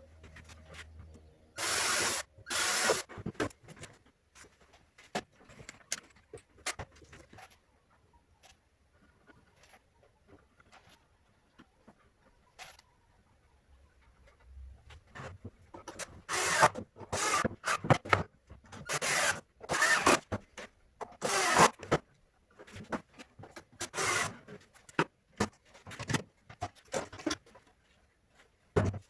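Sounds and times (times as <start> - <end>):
cordless drill drilling into wood: 1.6 - 3.1, 16.3 - 17.9, 18.9 - 20.2, 21.2 - 21.8, 23.9 - 24.4.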